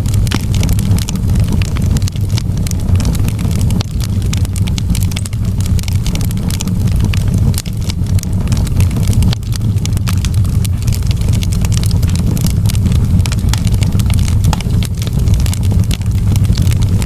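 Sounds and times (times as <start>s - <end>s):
steady low rumble: 0.0s - 17.0s
wood fire crackling: 0.0s - 17.0s.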